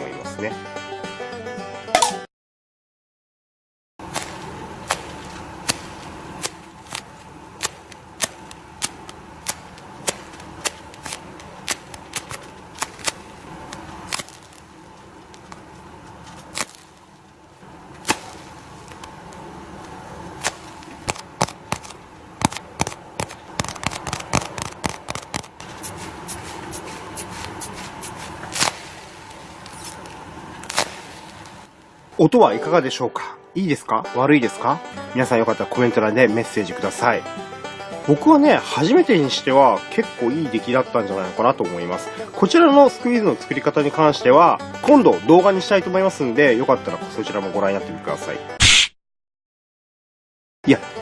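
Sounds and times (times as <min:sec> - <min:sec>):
faint steady hum: 0:04.0 - 0:33.8
squishy toy crackling clicks: 0:04.1 - 0:14.7, 0:15.3 - 0:17.0, 0:18.0 - 0:31.7.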